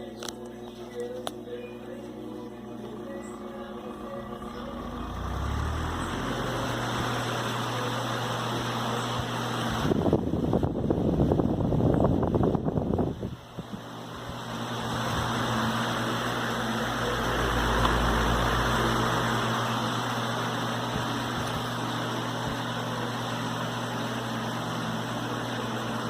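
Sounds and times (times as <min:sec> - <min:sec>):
fan air rushing: 0:00.0 - 0:26.0
low motor hum: 0:00.0 - 0:26.0.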